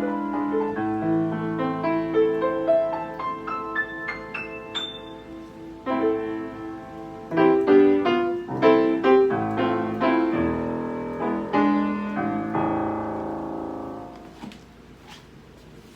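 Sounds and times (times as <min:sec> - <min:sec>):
piano playing chords: 0:00.0 - 0:14.5.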